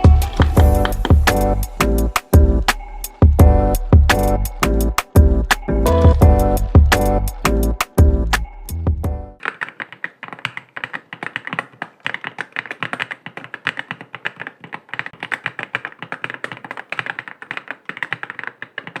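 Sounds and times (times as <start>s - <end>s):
mechanical keyboard typing: 9.4s - 19.0s.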